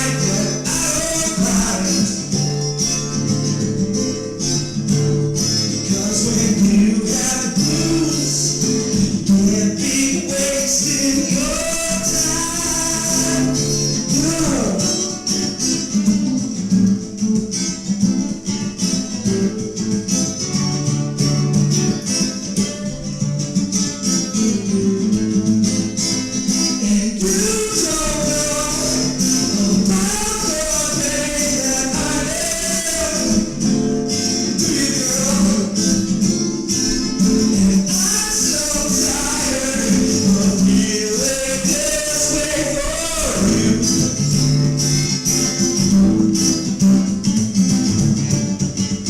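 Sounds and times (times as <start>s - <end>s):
person singing: 0.0s - 2.4s, 5.8s - 15.1s, 26.6s - 44.4s
acoustic guitar strumming blues: 0.0s - 49.0s
jingling hand percussion: 26.2s - 44.6s.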